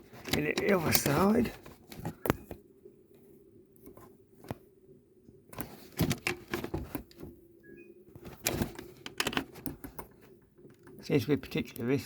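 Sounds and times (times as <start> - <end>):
low steady hum: 0.0 - 12.0
wall socket crackling: 8.4 - 11.0.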